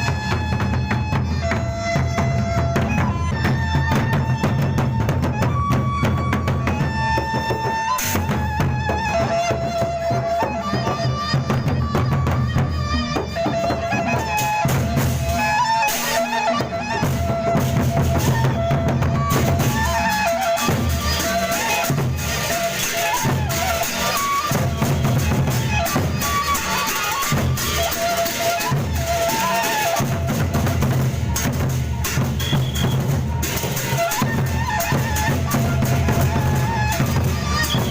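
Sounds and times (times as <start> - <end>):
large drums beating: 0.0 - 15.6, 16.6 - 37.9
cymbals clashing: 19.2 - 37.9.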